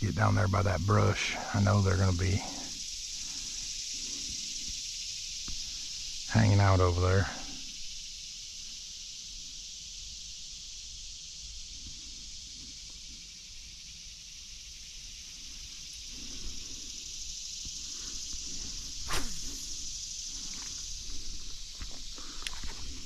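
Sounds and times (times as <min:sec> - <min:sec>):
high-pitched outdoor hiss: 0:00.0 - 0:23.0
footsteps and rustling on creek bank: 0:17.7 - 0:23.0
sharp swish: 0:19.0 - 0:19.7.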